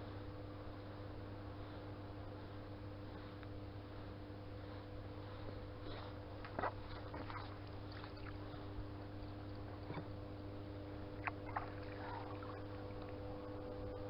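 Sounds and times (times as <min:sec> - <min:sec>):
steady low hum: 0:00.0 - 0:14.0
water sloshing: 0:06.4 - 0:10.2, 0:11.2 - 0:13.8.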